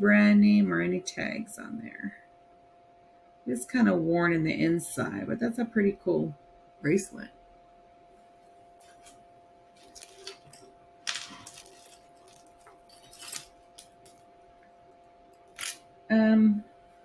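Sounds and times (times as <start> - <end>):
jewelry clinking and jingling: 9.8 - 14.3, 15.3 - 15.9.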